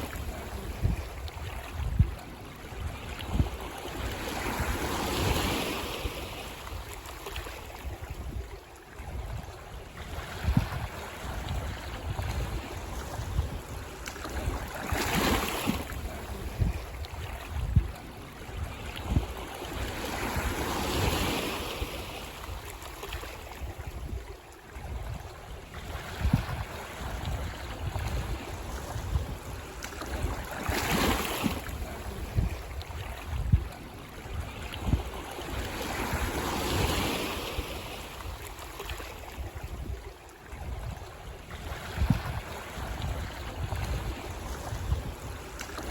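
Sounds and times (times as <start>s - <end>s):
ocean waves breaking: 0.0s - 45.9s
wind buffeting microphone: 0.0s - 45.9s.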